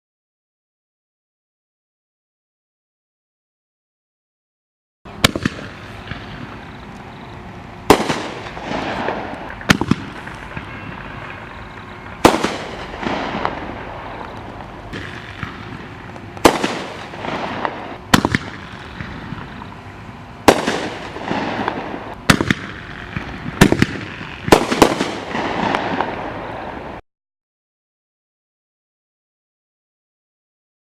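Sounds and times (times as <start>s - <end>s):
fireworks bangs with crackling: 5.1s - 27.0s.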